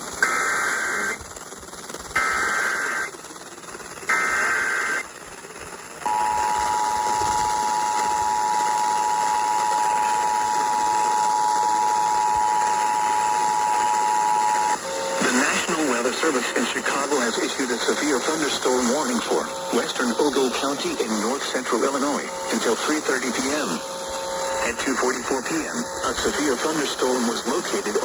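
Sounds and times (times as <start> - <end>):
data bursts: 0.2 - 1.2, 2.2 - 3.2, 4.0 - 5.1, 6.0 - 28.0
two-tone attention signal: 6.1 - 15.7.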